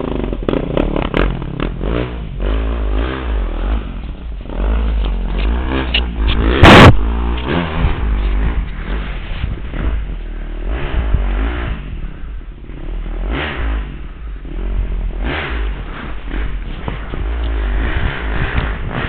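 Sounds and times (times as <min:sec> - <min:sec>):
atv engine revving: 0:00.0 - 0:19.0
low rumble: 0:00.0 - 0:19.0
loud sharp crack: 0:05.4 - 0:07.8.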